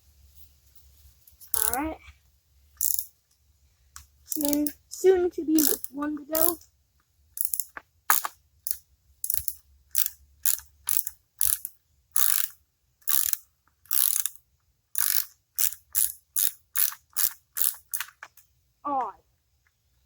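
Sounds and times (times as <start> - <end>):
ratchet wrench clicking: 1.4 - 1.8, 2.8 - 3.1, 4.3 - 4.8, 5.6 - 6.6, 7.4 - 14.4, 15.0 - 18.3.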